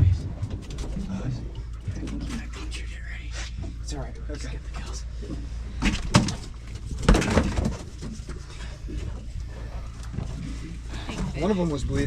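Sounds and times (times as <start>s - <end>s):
low rumble: 0.0s - 12.0s
knocks and thuds of fish handled: 5.8s - 8.4s.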